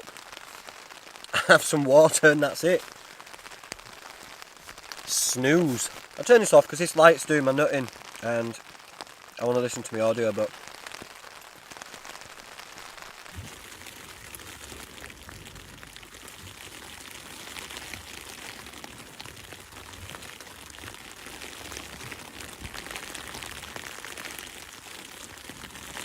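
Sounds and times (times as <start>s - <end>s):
light rain pattering on a tent: 0.0s - 26.0s.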